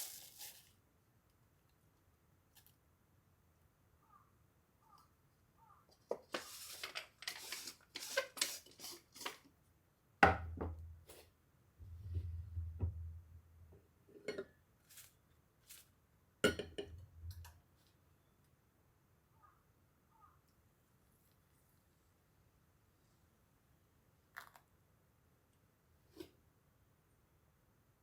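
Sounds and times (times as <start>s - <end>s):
cups clinking: 16.4s - 17.5s.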